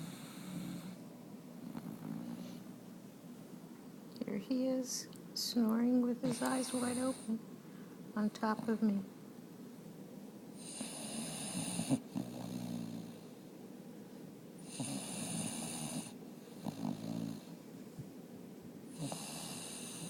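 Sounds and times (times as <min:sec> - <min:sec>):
dog snoring: 0:00.0 - 0:01.0, 0:01.6 - 0:02.6, 0:06.2 - 0:07.3, 0:10.6 - 0:13.4, 0:14.6 - 0:17.6, 0:18.9 - 0:20.0
high hissing breath: 0:00.0 - 0:01.0, 0:06.3 - 0:08.0.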